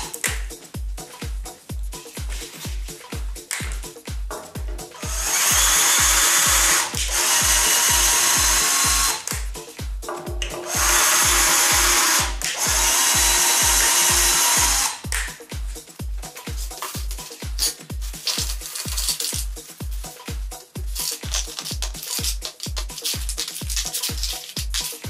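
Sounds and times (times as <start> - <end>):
background music with steady beat: 0.0 - 25.0
electric power tool running: 5.0 - 9.3, 10.6 - 15.0.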